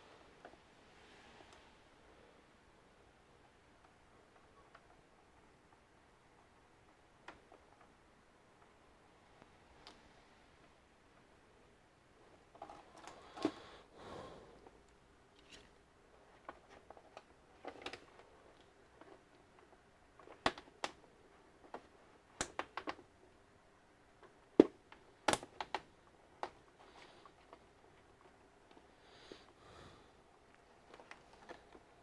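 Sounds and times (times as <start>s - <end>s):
plastic parts clicking: 16.4s - 21.0s, 21.6s - 23.1s, 24.2s - 28.8s.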